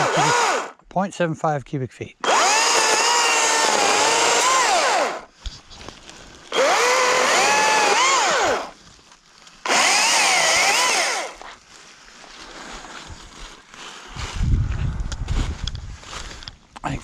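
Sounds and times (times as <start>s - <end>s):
chainsaw cutting wood: 0.0s - 0.8s, 2.2s - 5.3s, 6.5s - 8.8s, 9.6s - 11.4s.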